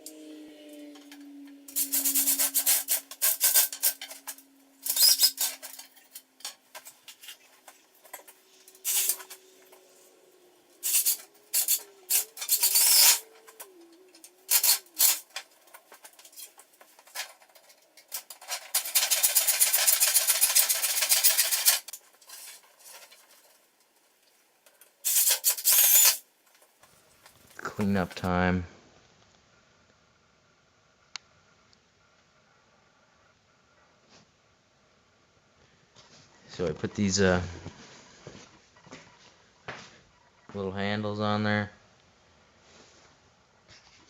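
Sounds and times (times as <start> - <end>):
hand scraping and rubbing: 0.0 - 23.6.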